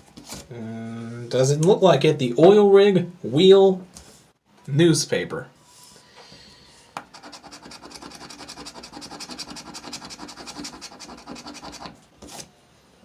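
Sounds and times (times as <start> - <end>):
lottery ticket being scratched: 7.1 - 12.5.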